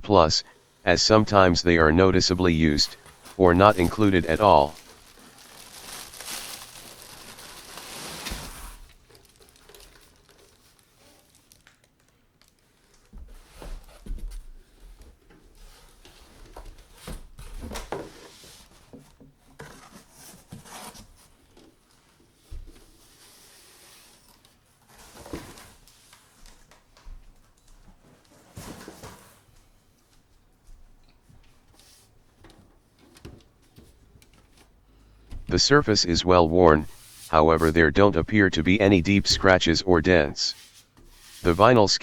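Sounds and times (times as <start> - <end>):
packaging crinkling and rustling: 4.8 - 13.1.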